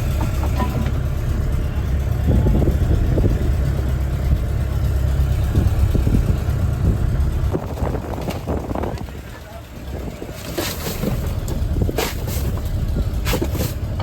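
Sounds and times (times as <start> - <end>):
boat engine droning: 0.0 - 14.0.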